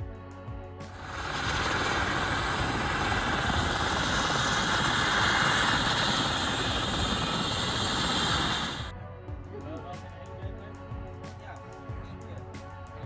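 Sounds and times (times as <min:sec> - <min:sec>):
helicopter rotor and turbine: 0:00.9 - 0:08.9.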